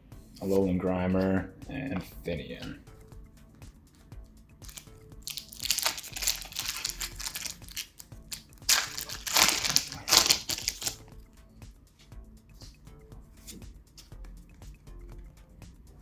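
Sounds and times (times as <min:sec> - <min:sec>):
foil wrapper crinkling: 0:04.6 - 0:11.1.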